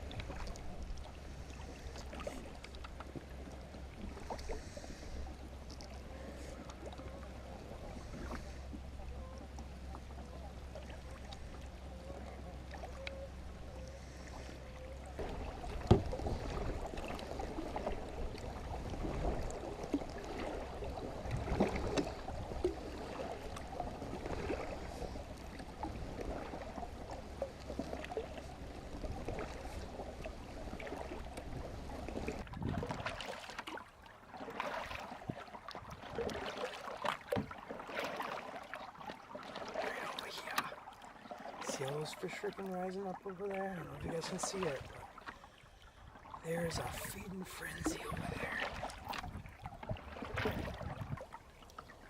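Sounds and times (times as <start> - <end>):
water splashing around a kayak: 0.0 - 52.0
knocks and clicks from boat gear: 15.2 - 16.4, 34.6 - 38.4.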